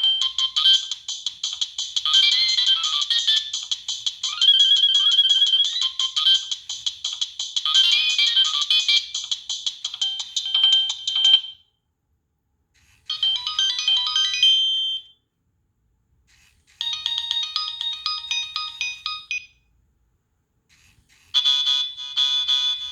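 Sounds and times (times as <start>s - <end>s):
electronic ringtone melody: 0.0s - 11.6s, 13.1s - 15.1s, 16.8s - 19.6s, 21.4s - 22.9s.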